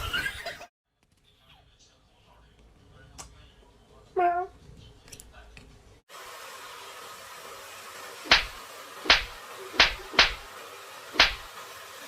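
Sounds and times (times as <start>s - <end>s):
sharp slaps or knocks: 8.3s - 10.5s, 11.2s - 11.5s.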